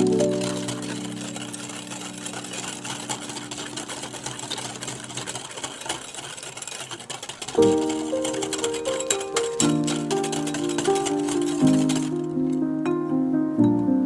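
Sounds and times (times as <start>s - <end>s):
mixer clattering in a bowl: 0.0s - 12.7s
background music: 7.6s - 14.0s.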